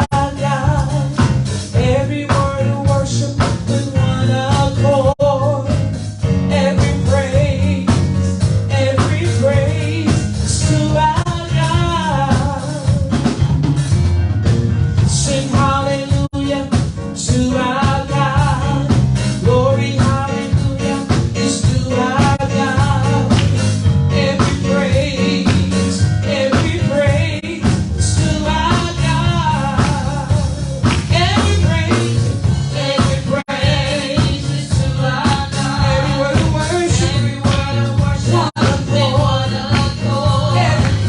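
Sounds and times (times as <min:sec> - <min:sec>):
steady drum beat: 0:00.0 - 0:41.0
upbeat gospel music: 0:00.0 - 0:41.0
voices singing: 0:19.4 - 0:41.0.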